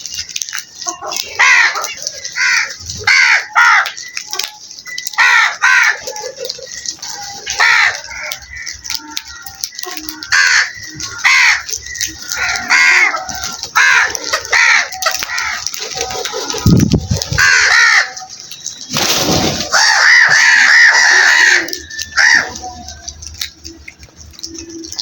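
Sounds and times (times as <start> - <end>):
crows cawing: 1.2 - 9.0, 10.2 - 15.8, 17.3 - 18.4, 19.6 - 22.9.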